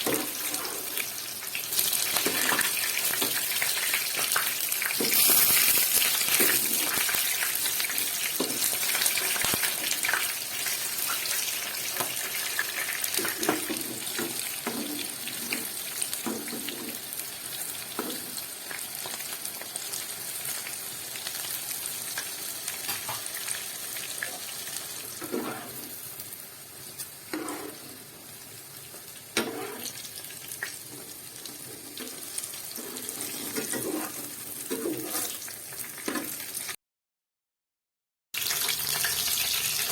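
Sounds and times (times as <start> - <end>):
spatula scraping pan: 0.0 - 1.1, 5.0 - 10.0, 25.1 - 26.0, 27.3 - 28.2, 29.4 - 30.1, 30.7 - 36.4
food sizzling in hot oil: 0.0 - 36.8, 38.4 - 39.9.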